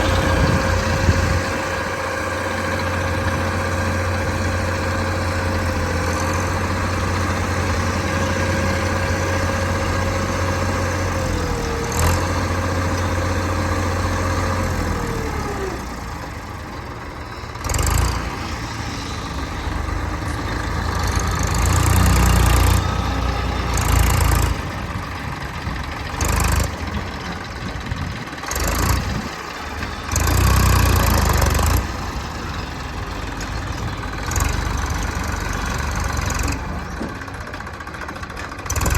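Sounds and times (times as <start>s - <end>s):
diesel engine running: 0.0s - 38.9s
loud engine surges: 0.0s - 38.9s.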